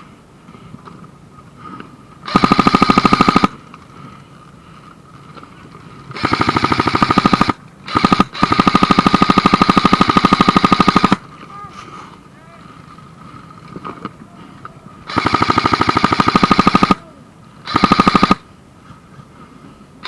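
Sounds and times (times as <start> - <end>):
airsoft gun firing bursts: 2.2 - 3.6, 6.1 - 11.2, 15.1 - 18.5.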